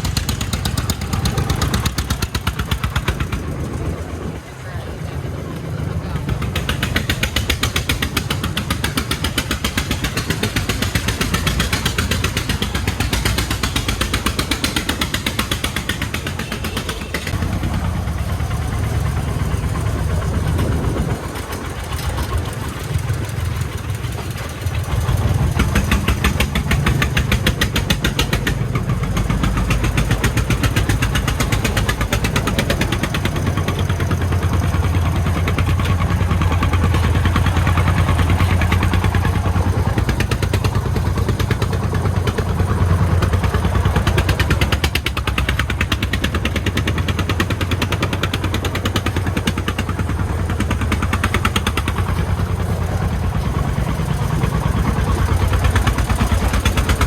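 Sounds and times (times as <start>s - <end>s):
diesel engine chugging: 0.0s - 57.0s.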